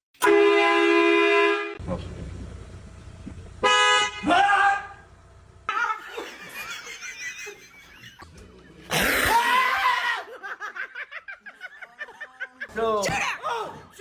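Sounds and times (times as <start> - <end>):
loud wordless cry: 4.2 - 5.0, 8.9 - 10.4
people laughing: 5.7 - 13.7.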